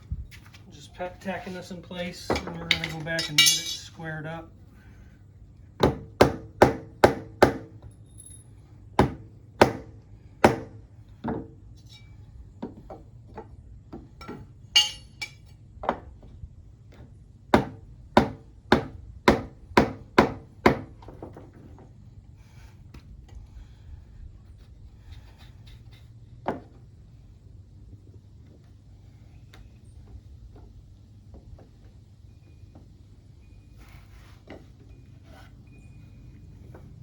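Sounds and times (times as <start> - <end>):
hammer striking wood: 5.8 - 7.7, 9.0 - 10.8.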